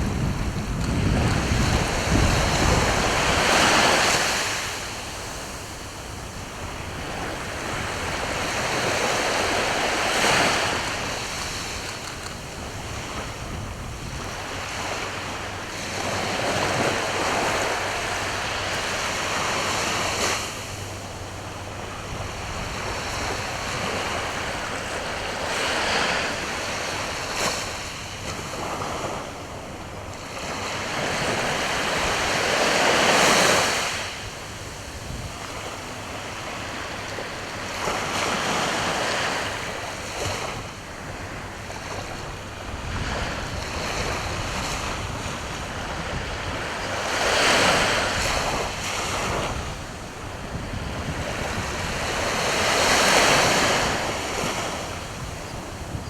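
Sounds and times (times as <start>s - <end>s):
sea waves washing ashore: 0.0s - 56.0s
wind on microphone: 0.0s - 56.0s.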